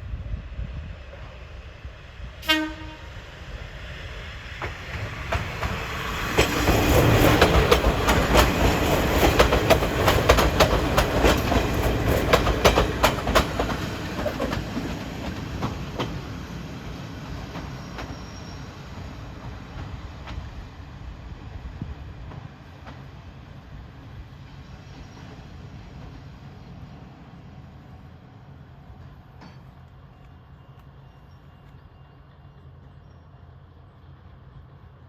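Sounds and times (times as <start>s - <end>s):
train rumbling past: 0.0s - 35.0s
train horn blast: 2.4s - 3.3s
wheels clacking over rail joints: 4.6s - 16.4s.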